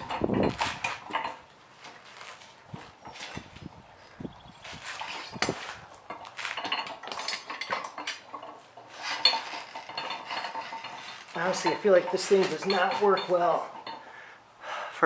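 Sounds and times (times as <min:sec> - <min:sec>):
metal parts clanking and scraping: 0:00.0 - 0:14.1
ringing metallic clank: 0:05.0 - 0:14.1.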